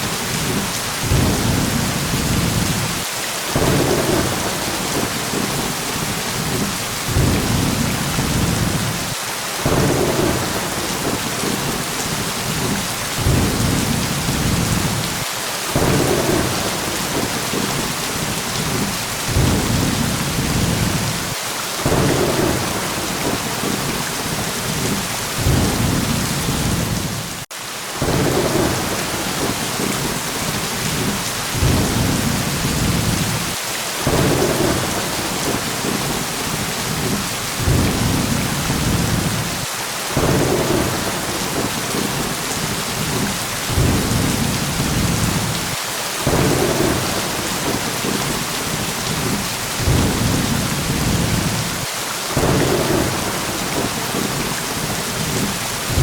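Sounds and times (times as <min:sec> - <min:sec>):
heavy rain hissing: 0:00.0 - 0:56.0
thunder rolling: 0:00.4 - 0:03.0, 0:06.4 - 0:27.4, 0:30.8 - 0:36.3, 0:36.9 - 0:39.5, 0:43.7 - 0:48.2, 0:49.2 - 0:51.7, 0:55.2 - 0:56.0.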